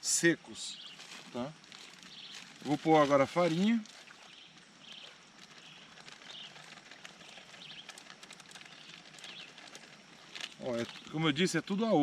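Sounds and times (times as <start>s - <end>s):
faint forest ambience: 0.0s - 12.0s
bird chirps: 2.0s - 2.5s, 4.2s - 6.6s, 7.2s - 8.0s, 8.6s - 9.6s.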